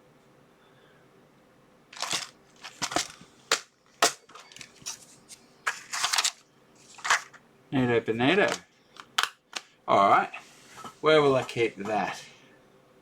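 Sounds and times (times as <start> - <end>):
plastic packaging crackle: 2.0 - 5.0.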